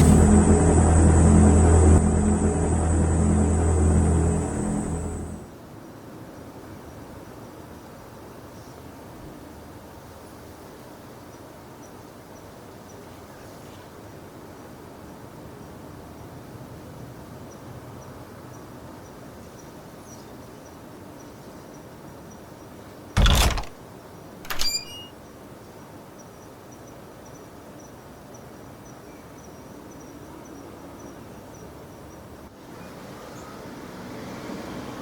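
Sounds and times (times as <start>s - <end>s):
brief metallic ring: 24.5s - 25.1s.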